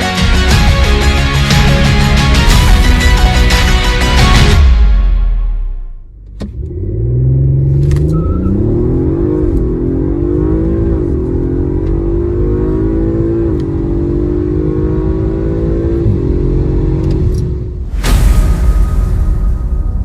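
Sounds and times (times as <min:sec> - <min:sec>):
car engine accelerating through gears: 0:06.2 - 0:17.8.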